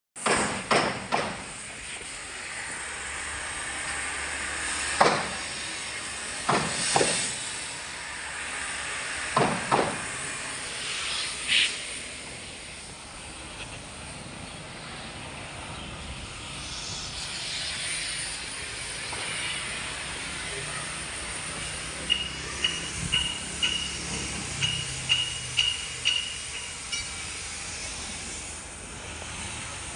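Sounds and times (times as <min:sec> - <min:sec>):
wood chipper running: 0:01.4 - 0:14.0.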